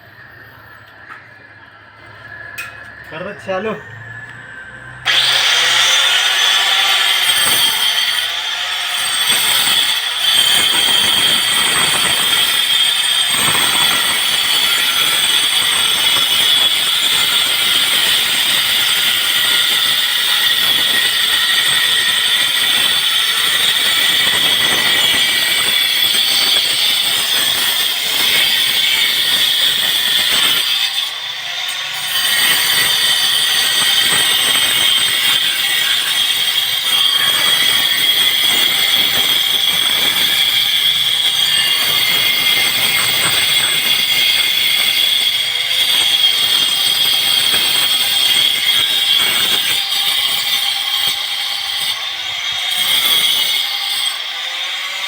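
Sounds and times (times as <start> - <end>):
machine high-pitched whine: 0.0 - 27.0.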